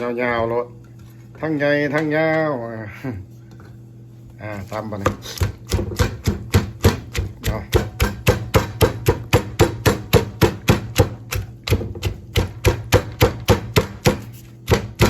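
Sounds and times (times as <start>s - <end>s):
pestle pounding in mortar: 5.0s - 15.0s.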